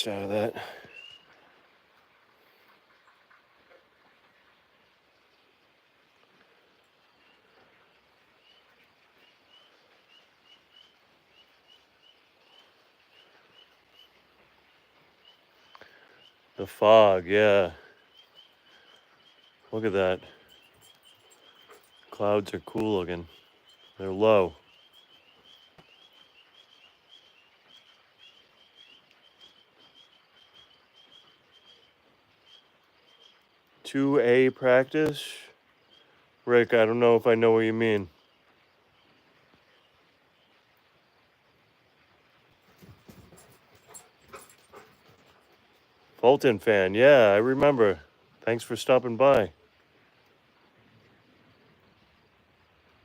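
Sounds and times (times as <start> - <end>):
bird chirping: 0.0 - 1.4, 7.0 - 35.0, 42.5 - 45.9
soft hiss: 0.0 - 53.0.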